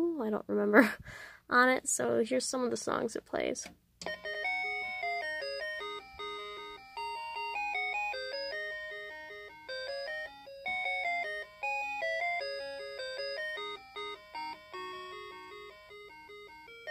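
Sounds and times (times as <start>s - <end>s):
cuckoo clock electronic chime tune: 4.0s - 16.9s.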